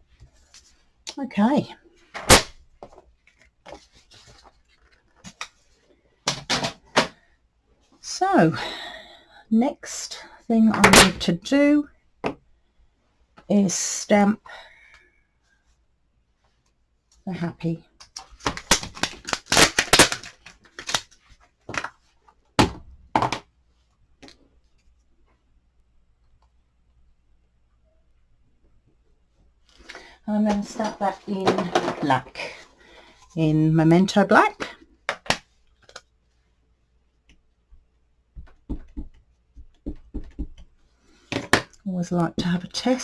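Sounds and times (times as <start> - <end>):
sharp taps and knocks: 38.4 - 40.7.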